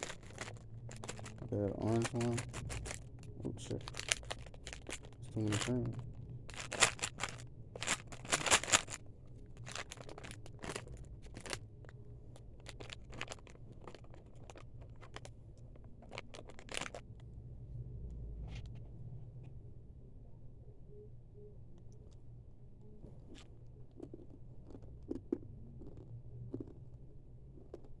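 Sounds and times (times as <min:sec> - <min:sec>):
candy crunching: 0:00.0 - 0:17.3, 0:23.0 - 0:28.0.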